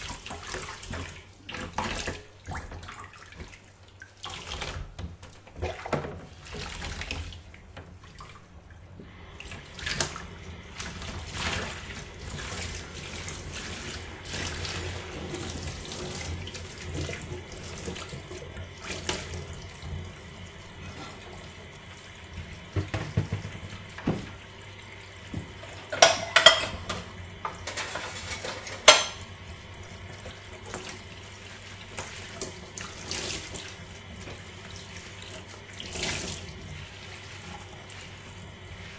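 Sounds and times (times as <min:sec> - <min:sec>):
tap water running into sink: 0:00.0 - 0:38.9
knocks and clatters against sink: 0:22.7 - 0:24.4.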